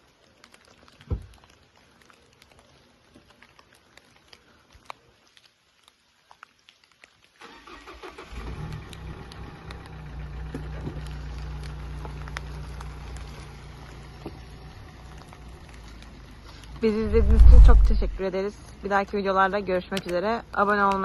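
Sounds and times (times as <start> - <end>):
car engine cranking and idling: 7.4 - 18.2.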